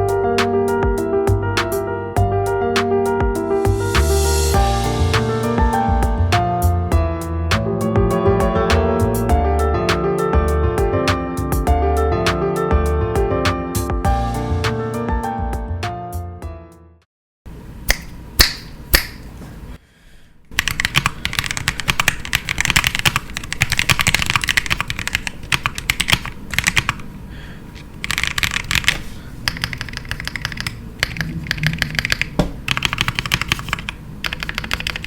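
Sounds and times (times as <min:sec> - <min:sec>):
typing on mechanical keyboard: 0:20.6 - 0:27.0, 0:28.0 - 0:35.0.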